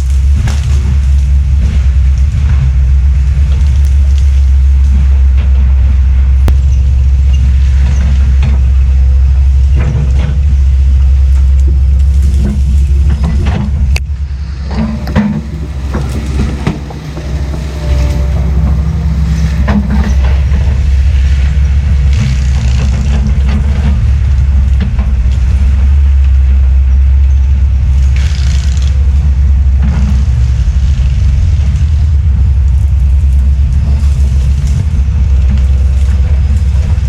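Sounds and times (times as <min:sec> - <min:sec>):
sharp cracks and knocks: 0:00.0 - 0:02.7
diesel engine droning: 0:00.0 - 0:37.0.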